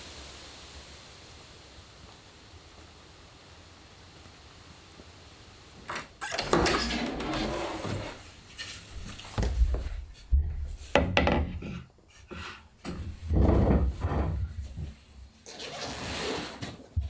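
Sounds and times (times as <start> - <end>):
hand tools scraping wood: 6.4 - 10.2, 10.9 - 14.2.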